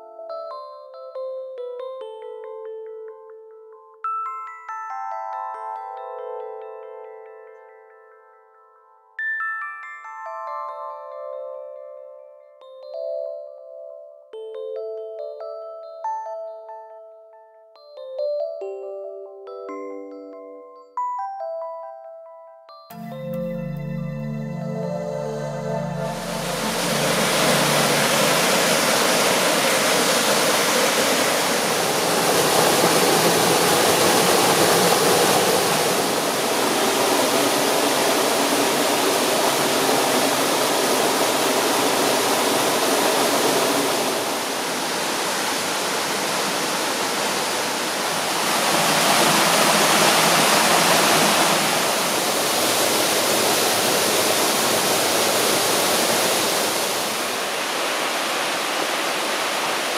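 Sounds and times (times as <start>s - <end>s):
waterfall roaring: 25.8s - 59.9s.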